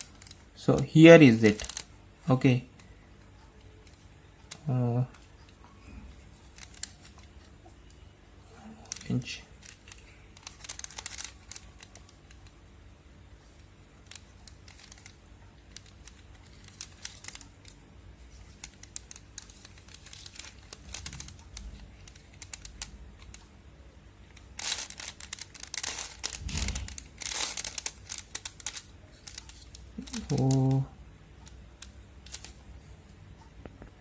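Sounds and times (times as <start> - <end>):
puzzle cube clicking and rattling: 0.0 - 1.9, 6.2 - 7.6, 8.8 - 12.6, 14.0 - 23.5, 24.2 - 32.6.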